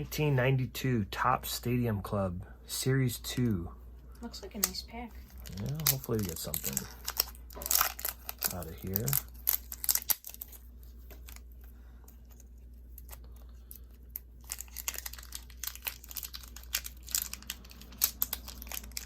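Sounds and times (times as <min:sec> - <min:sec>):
card pack wrapper crinkling and tearing: 0:05.3 - 0:19.0.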